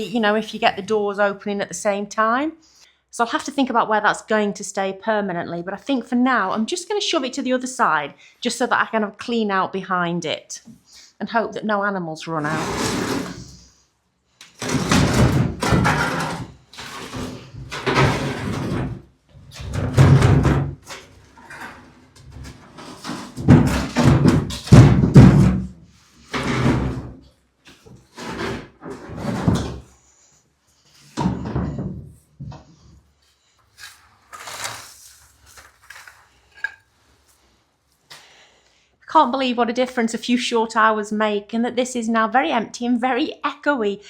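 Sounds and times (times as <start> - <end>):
thumps and bangs of clearing rubbish: 14.4 - 27.2, 27.8 - 29.9, 31.1 - 32.9.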